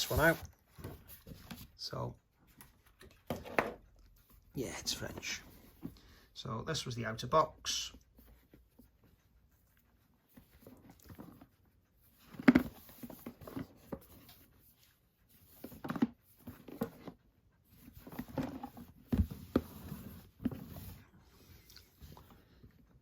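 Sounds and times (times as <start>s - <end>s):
packaging rustling and scraping: 0.0s - 1.6s, 17.8s - 21.2s.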